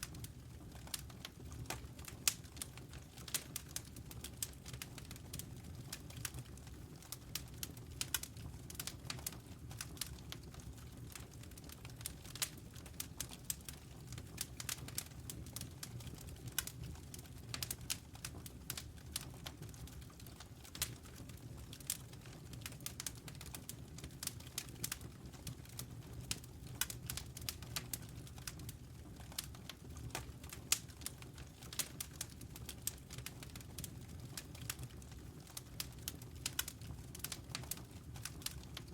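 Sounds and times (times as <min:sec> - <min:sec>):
burning wood popping and snapping: 0:21.7 - 0:38.9.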